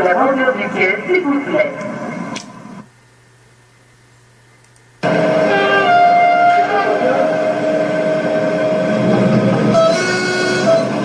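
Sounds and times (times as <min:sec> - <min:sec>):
train rumbling over loudspeakers: 0:00.0 - 0:02.2, 0:05.1 - 0:11.0
whining tones changing pitch: 0:05.0 - 0:11.0.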